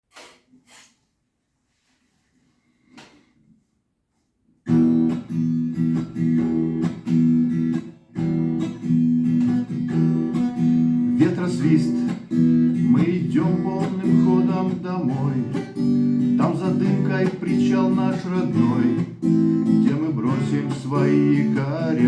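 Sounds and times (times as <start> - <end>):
acoustic guitar strumming: 4.7 - 22.0
person singing: 11.0 - 22.0.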